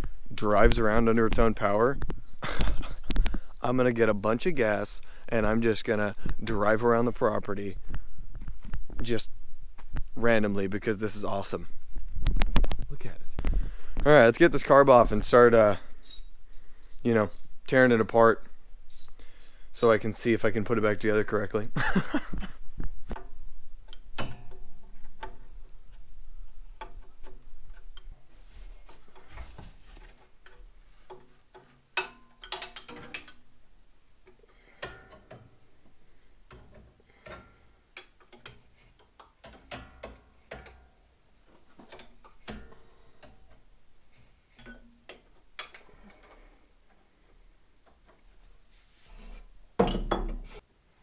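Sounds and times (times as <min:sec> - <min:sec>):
ratchet wrench clicking: 0:01.2 - 0:04.4, 0:06.8 - 0:07.5, 0:15.1 - 0:18.1, 0:18.9 - 0:20.0.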